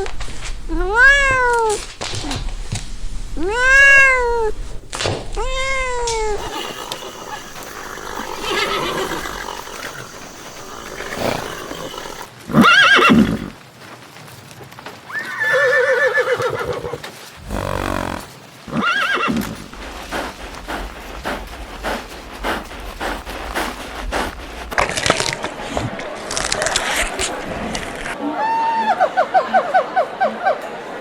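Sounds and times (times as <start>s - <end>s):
horse neighing: 5.4s - 13.6s, 15.1s - 24.4s.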